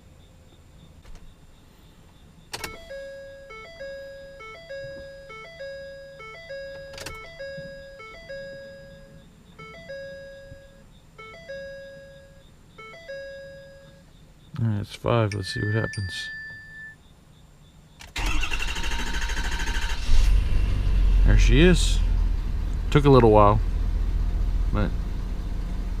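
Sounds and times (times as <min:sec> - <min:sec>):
two-note warning chime: 0:02.8 - 0:14.0, 0:15.3 - 0:17.0.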